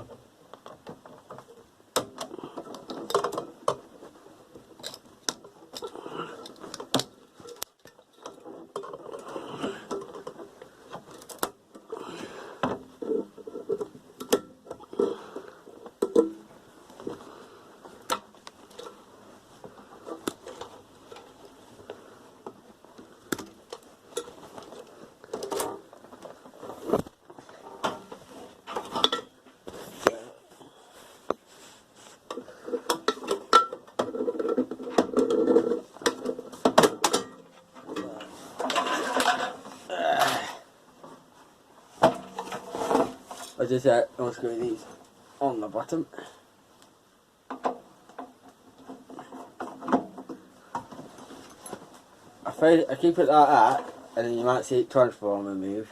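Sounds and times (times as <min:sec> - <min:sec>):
metal parts clinking and clattering: 0:33.0 - 0:39.6.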